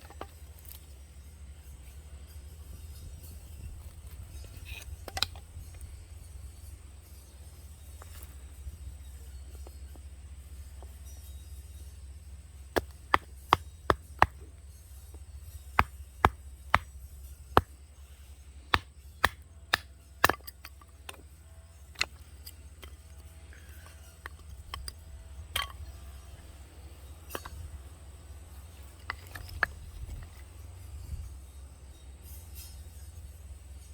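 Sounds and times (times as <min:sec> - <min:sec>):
firewood being chopped: 0:12.7 - 0:21.3, 0:21.9 - 0:26.0.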